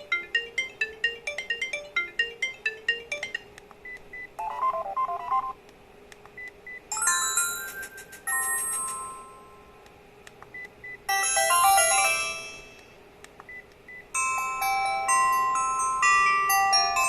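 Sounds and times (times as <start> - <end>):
polyphonic phone ringtone: 0.0 - 3.5, 4.4 - 5.5, 11.1 - 12.7.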